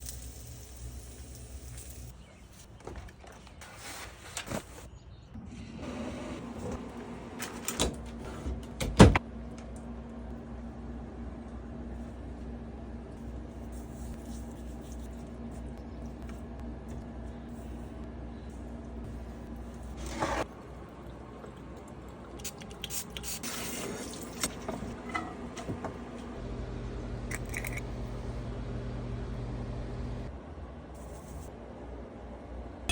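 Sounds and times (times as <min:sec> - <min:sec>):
steady low hum: 0:05.2 - 0:23.2, 0:24.2 - 0:32.9
kitchen knocks and clatters: 0:24.5 - 0:26.1.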